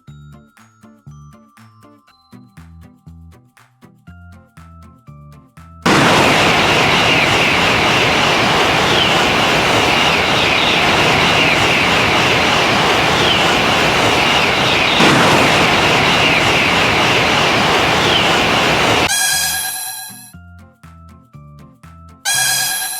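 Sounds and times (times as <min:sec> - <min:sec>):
train passing at speed: 0:05.9 - 0:19.1.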